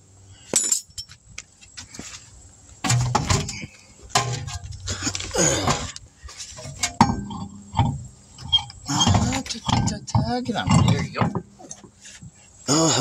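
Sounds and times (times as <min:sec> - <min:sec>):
metal clinks and knocks: 0:00.5 - 0:01.4, 0:02.8 - 0:12.4.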